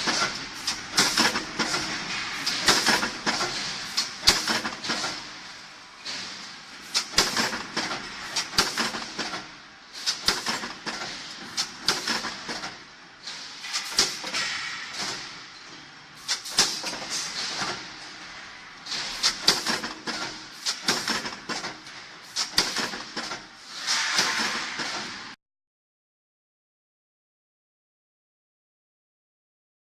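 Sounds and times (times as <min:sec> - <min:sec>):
machine hissing: 0:00.0 - 0:09.2.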